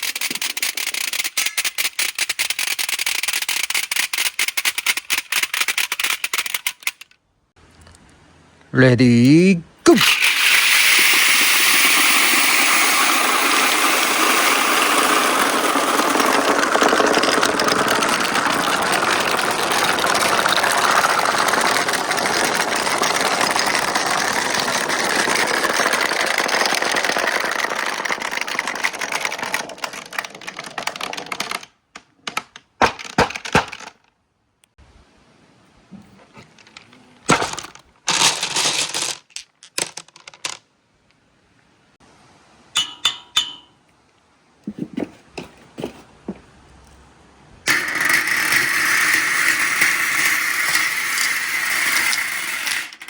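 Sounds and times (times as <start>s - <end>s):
marbles rattling down a marble run: 0.0s - 7.0s, 10.0s - 31.7s, 36.6s - 40.6s, 47.7s - 53.0s
marbles clicking: 0.0s - 7.1s, 10.0s - 34.0s, 47.7s - 53.0s.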